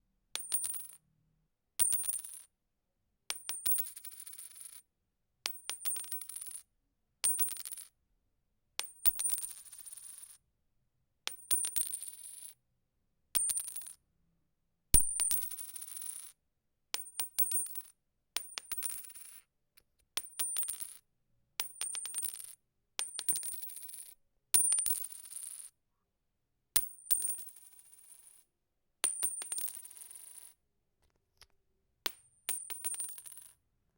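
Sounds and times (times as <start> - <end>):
coin dropping and spinning: 0.4 - 1.0, 1.8 - 2.4, 3.3 - 4.8, 5.5 - 6.6, 7.3 - 7.9, 8.8 - 10.4, 11.3 - 12.6, 13.4 - 14.0, 15.0 - 16.3, 17.0 - 19.4, 20.2 - 21.0, 21.6 - 25.7, 26.8 - 28.4, 29.0 - 30.6, 32.1 - 33.6.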